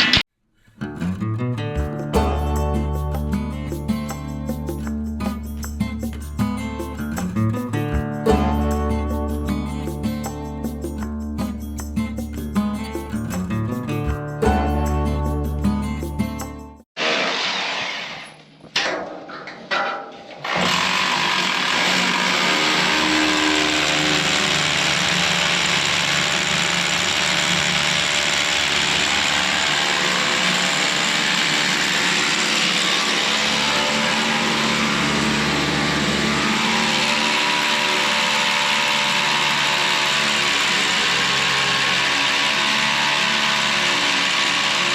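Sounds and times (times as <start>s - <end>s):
hammer drill boring into concrete: 17.0s - 18.5s, 20.4s - 44.9s.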